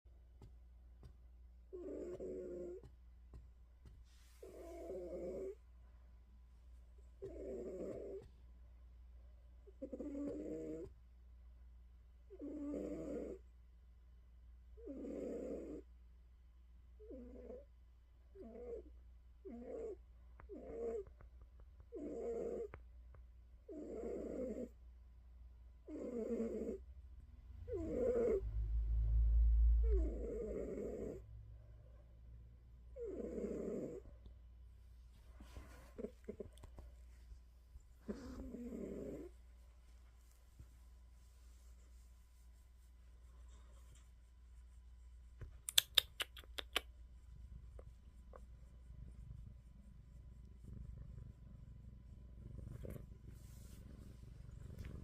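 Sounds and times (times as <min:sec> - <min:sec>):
cat snoring: 0:01.7 - 0:02.9, 0:04.4 - 0:05.6, 0:07.2 - 0:08.3, 0:09.6 - 0:10.9, 0:12.3 - 0:13.4, 0:14.8 - 0:15.9, 0:17.0 - 0:17.7, 0:18.4 - 0:21.1, 0:21.9 - 0:22.8, 0:23.7 - 0:24.8, 0:25.9 - 0:26.8, 0:27.7 - 0:28.6, 0:29.6 - 0:31.2, 0:33.0 - 0:34.1, 0:38.0 - 0:39.3, 0:50.4 - 0:55.0
sharp clicks: 0:45.6 - 0:46.9
deep low rumble: 0:49.0 - 0:55.0.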